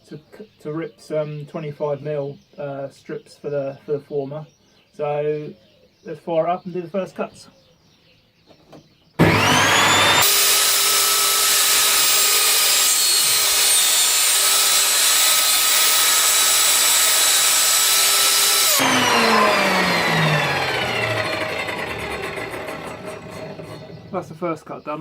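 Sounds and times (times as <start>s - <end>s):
table saw cutting wood: 9.2s - 24.2s.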